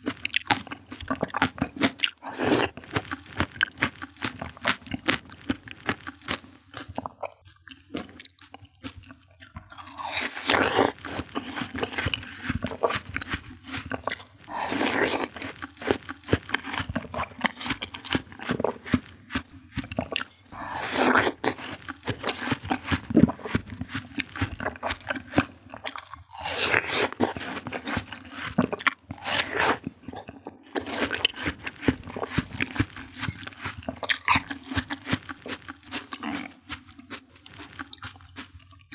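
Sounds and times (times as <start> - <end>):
wet chewing of fruit: 0.0 - 38.9
crunchy bite: 9.4 - 38.9.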